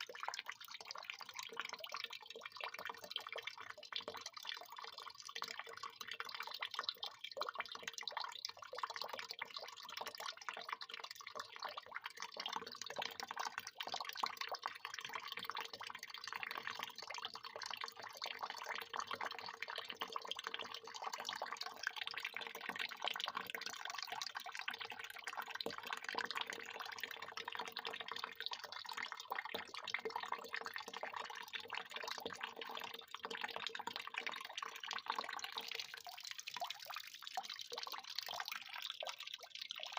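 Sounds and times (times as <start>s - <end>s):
water pouring and splashing: 25.1s - 39.9s.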